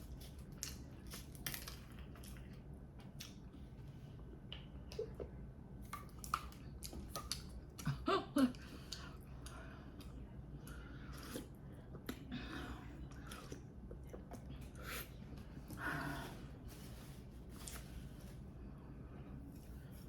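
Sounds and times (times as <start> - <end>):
wet mouth clicks and smacks: 5.9 - 7.5
person chewing: 8.8 - 12.2.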